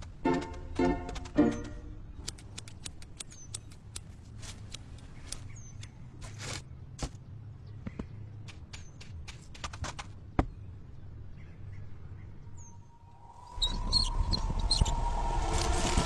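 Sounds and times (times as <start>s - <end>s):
sharp clicks: 1.1s - 5.9s
high bird chirps: 12.6s - 15.8s.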